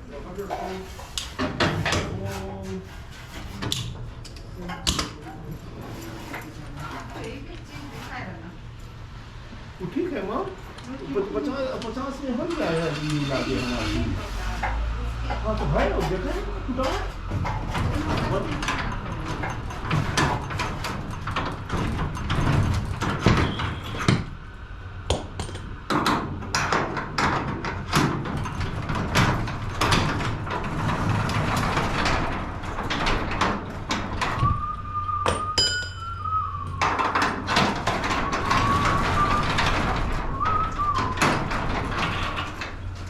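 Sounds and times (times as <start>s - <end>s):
metal clanks and knocks: 14.5s - 24.4s, 25.1s - 34.6s, 35.3s - 43.0s
high-pitched squeal: 34.6s - 36.9s.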